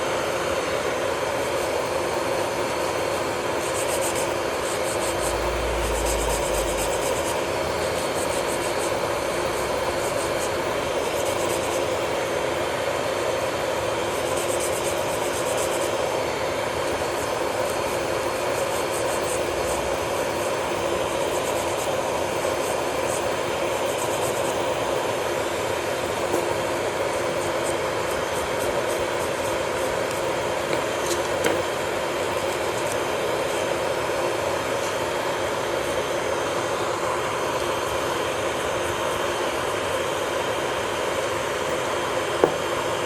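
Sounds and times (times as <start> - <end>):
electric nail drill hum: 0.0 - 43.0
drill bit grinding on nail: 1.4 - 12.4, 26.1 - 33.6.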